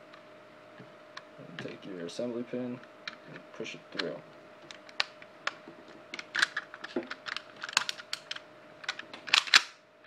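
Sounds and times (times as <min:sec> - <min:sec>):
pistol parts clicking and clacking: 0:06.2 - 0:09.8.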